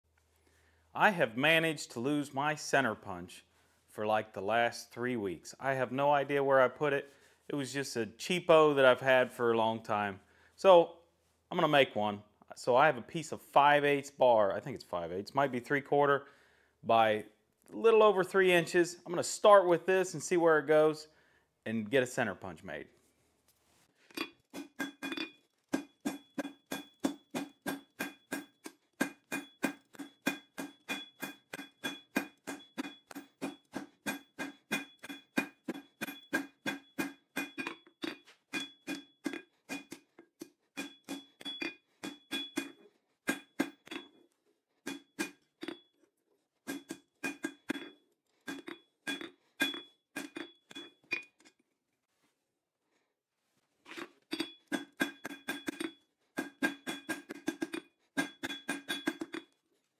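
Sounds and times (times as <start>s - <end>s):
hammer striking steel anvil: 24.6s - 37.8s, 56.4s - 59.3s.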